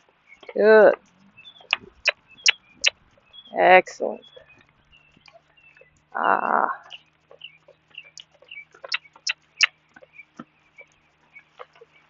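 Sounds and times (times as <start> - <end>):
sharp clicks and ticks: 0.3 - 3.4, 6.8 - 11.8.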